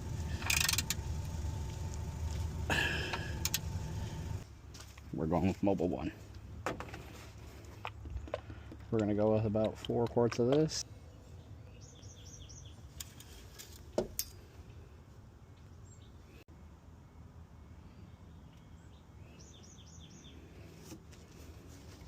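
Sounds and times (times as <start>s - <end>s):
songbird chirping: 10.5s - 13.4s, 14.7s - 20.8s.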